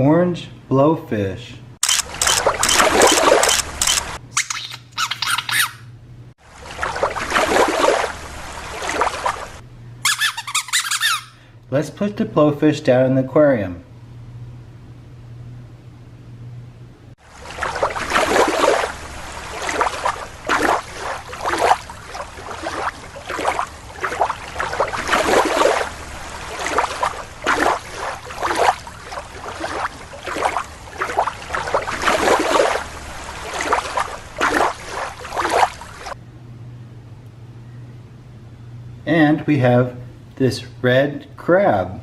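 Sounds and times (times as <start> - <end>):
water splashing and sloshing: 1.8 - 5.7, 6.4 - 9.6, 17.2 - 36.2.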